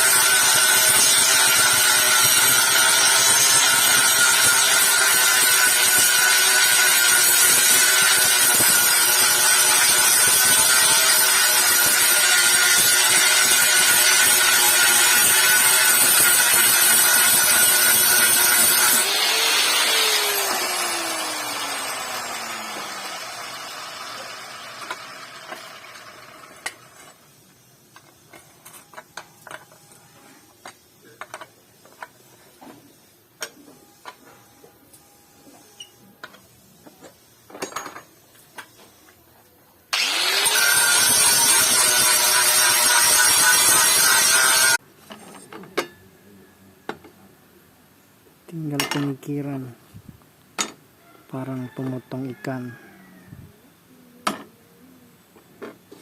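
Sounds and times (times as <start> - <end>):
electric grinder grinding steel: 0.0 - 27.2, 39.9 - 44.8.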